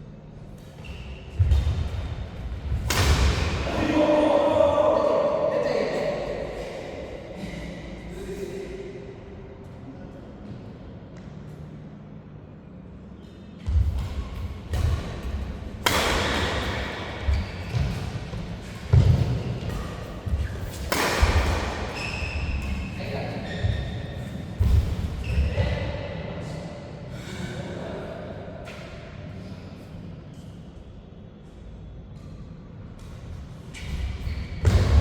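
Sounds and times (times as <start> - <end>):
voices: 3.6 - 9.2.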